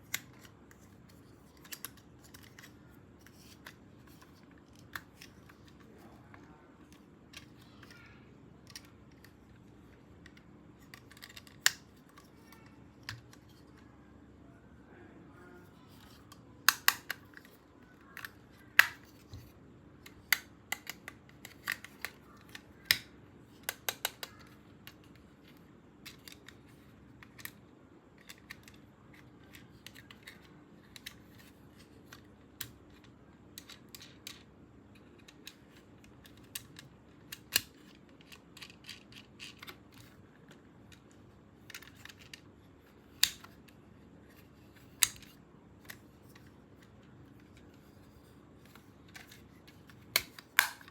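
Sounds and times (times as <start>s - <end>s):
plastic toy clicks and snaps: 8.6s - 9.3s, 10.3s - 13.4s, 16.6s - 17.4s, 18.0s - 19.1s, 20.0s - 25.2s, 35.2s - 40.1s, 43.1s - 43.8s, 44.9s - 46.9s, 49.1s - 50.9s.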